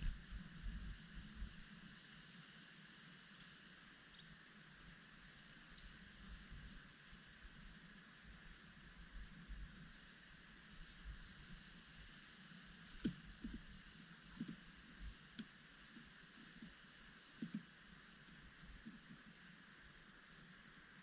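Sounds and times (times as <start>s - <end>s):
faint outdoor ambience: 0.0s - 21.0s
songbirds chirping: 7.9s - 11.3s.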